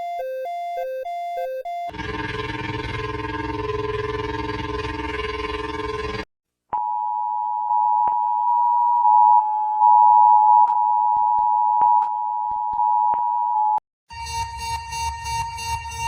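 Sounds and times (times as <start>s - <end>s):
two-tone alarm: 0.0s - 4.8s, 14.1s - 16.0s.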